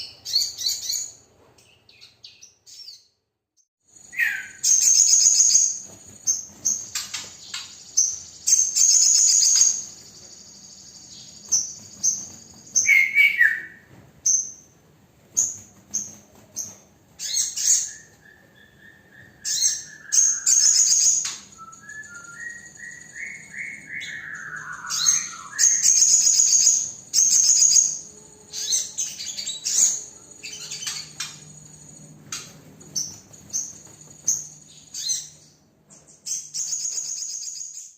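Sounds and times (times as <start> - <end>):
bird chirping and trilling: 4.0 - 14.7, 15.3 - 37.9
bird whistles sliding downward: 17.3 - 27.9.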